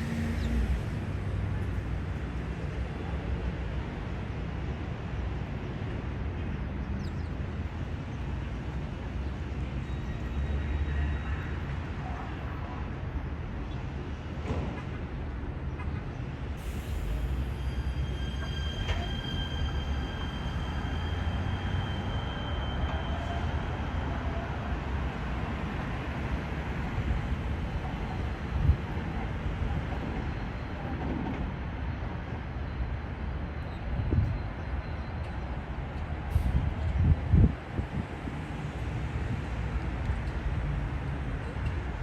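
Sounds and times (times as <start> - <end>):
high-pitched squeal: 16.7 - 24.0.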